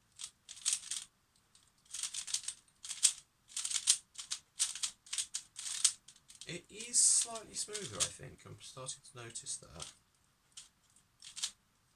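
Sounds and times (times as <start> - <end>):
plastic puzzle clicking rattle: 0.2 - 6.4, 10.6 - 11.6.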